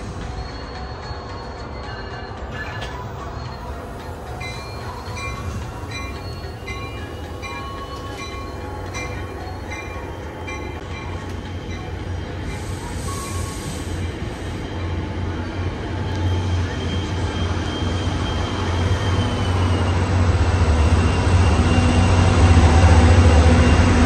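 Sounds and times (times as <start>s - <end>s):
locomotive bell ringing: 0.0s - 13.5s
diesel locomotive engine rumble: 0.0s - 24.0s
burst of hiss: 12.5s - 14.6s.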